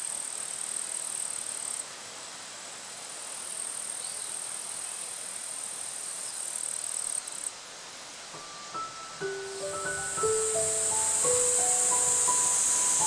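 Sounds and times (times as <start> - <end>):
outdoor hiss: 0.0 - 13.0
insects buzzing: 8.3 - 13.0.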